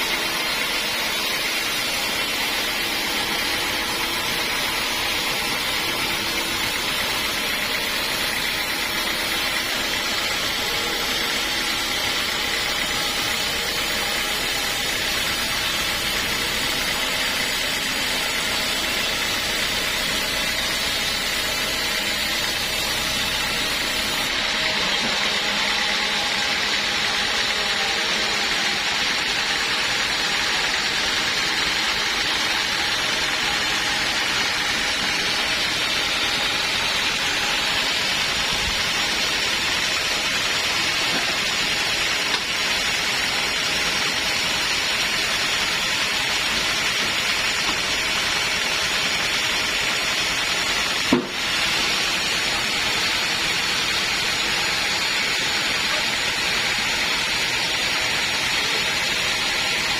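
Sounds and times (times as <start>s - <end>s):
sawmill saw whirring: 0.0s - 59.9s.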